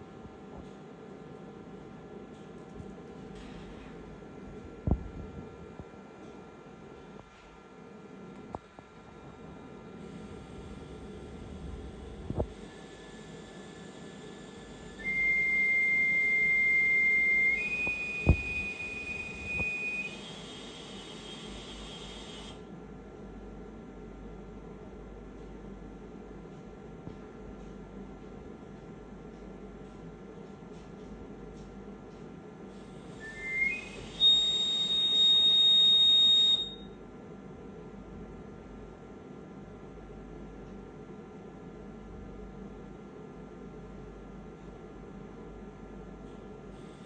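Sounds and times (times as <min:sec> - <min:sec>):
ventilator electronic tone: 0:12.3 - 0:22.6, 0:33.2 - 0:37.0
loud high-pitched beep: 0:15.4 - 0:20.4, 0:33.8 - 0:36.9.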